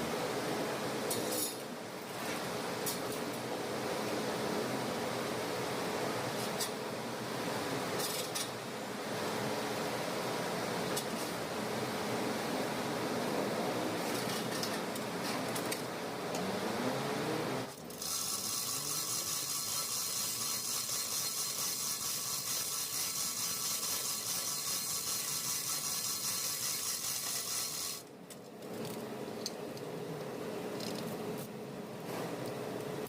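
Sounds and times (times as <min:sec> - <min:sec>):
small power tool running: 0:18.0 - 0:28.0.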